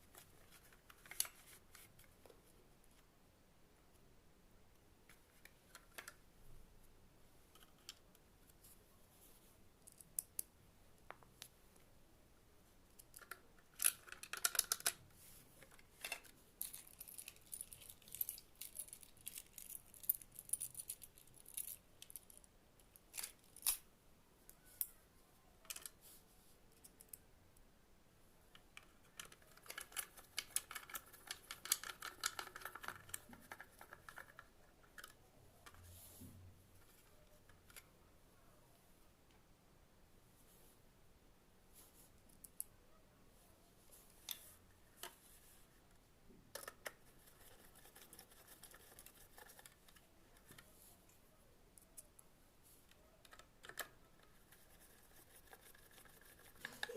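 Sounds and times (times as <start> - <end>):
small hard parts clicking: 13.0 - 15.0, 28.6 - 35.8.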